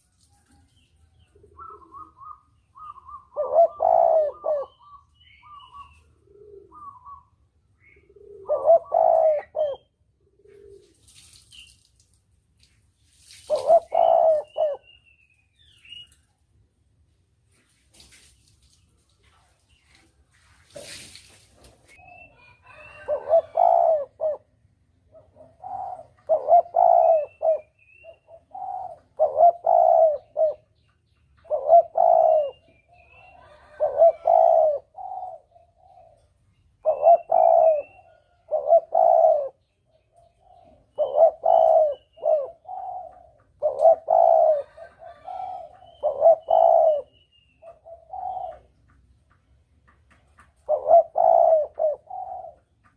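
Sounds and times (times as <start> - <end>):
dove cooing: 1.2 - 11.0, 13.5 - 15.0, 21.9 - 30.8, 31.4 - 48.9, 50.4 - 52.9.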